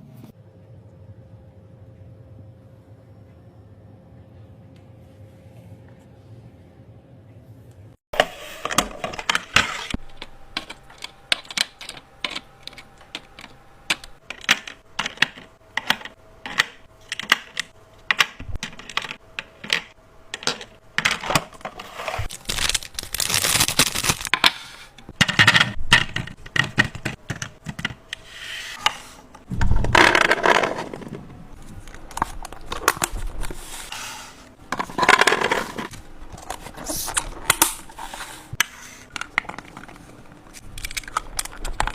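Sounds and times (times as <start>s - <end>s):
containers and utensils clicking: 39.1s - 41.9s.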